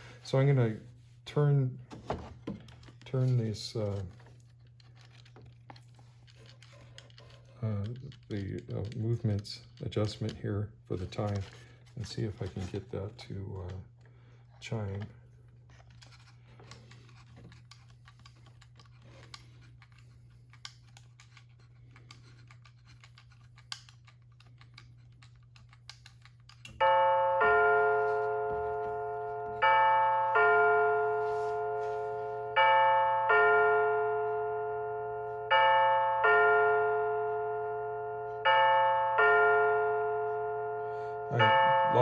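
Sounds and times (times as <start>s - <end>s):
two-note electronic chime: 27.0s - 42.0s.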